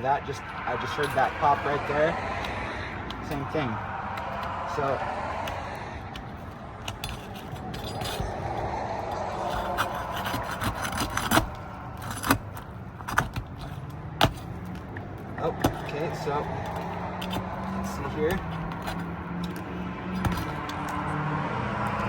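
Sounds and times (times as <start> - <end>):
tool scraping under shingles: 0.0 - 22.0
shingles popping loose: 9.4 - 15.9.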